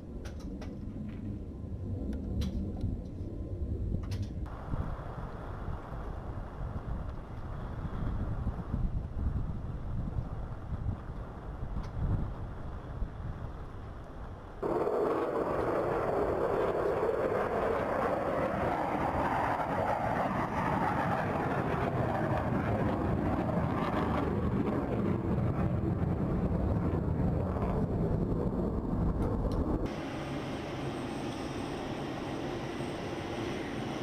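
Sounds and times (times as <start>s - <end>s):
jet engine roar: 14.5s - 34.0s.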